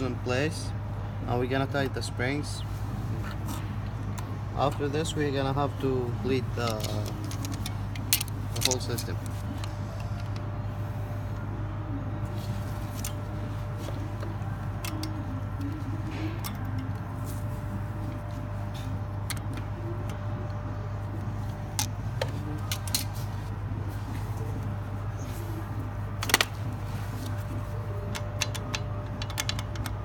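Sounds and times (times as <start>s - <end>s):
steady low hum: 0.0s - 30.0s
metal tools clicking and clinking: 6.5s - 10.4s, 21.7s - 23.3s, 28.0s - 30.0s.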